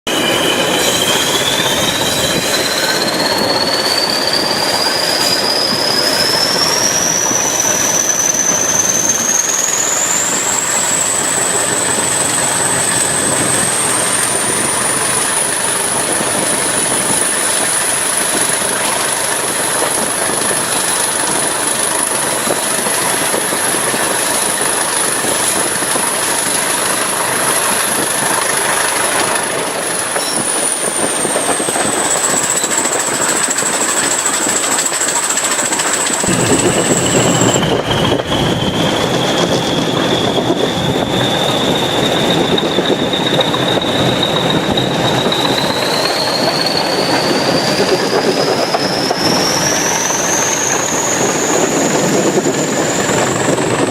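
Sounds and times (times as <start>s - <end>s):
diesel locomotive engine: 0.0s - 53.9s
rising turbo whistle: 0.1s - 53.9s.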